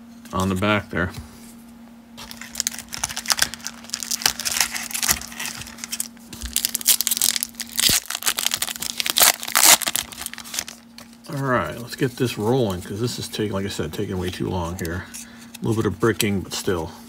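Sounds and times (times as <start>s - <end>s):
card pack wrapper tearing and crinkling: 2.2s - 11.4s.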